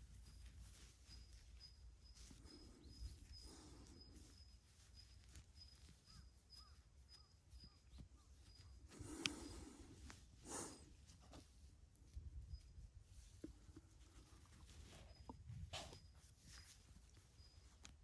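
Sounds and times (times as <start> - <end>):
small birds chirping: 0.0 - 11.0, 12.1 - 18.0.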